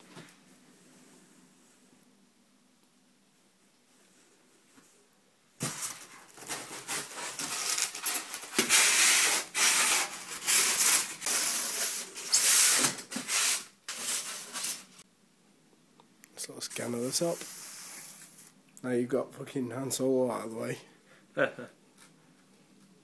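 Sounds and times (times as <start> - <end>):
cardboard rubbing and scraping: 5.6 - 14.9.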